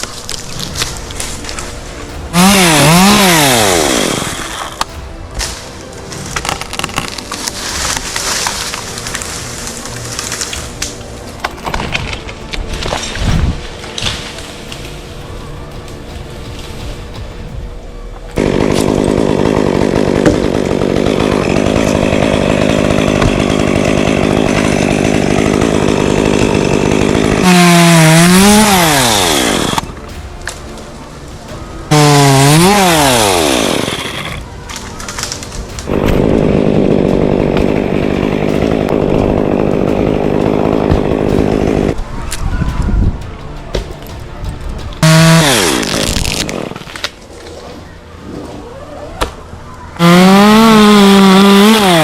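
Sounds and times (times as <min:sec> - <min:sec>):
chainsaw running and revving: 0:00.0 - 0:14.4, 0:18.4 - 0:29.8, 0:31.9 - 0:42.0, 0:45.0 - 0:47.0, 0:50.0 - 0:52.0.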